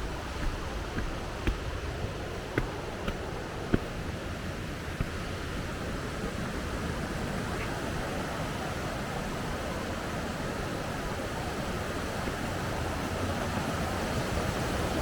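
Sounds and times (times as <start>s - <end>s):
sharp taps: 0.0s - 4.2s.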